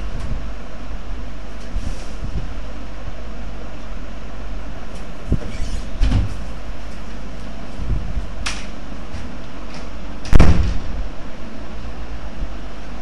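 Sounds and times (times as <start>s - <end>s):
steady low hum: 0.0s - 13.0s
heavy thud: 10.3s - 11.0s.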